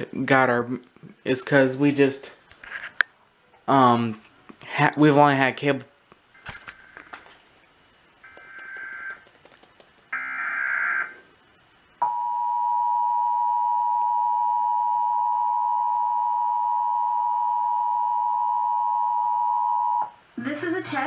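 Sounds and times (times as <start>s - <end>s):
warbling data tones: 8.1s - 9.2s
steady two-tone attention signal: 12.0s - 20.1s.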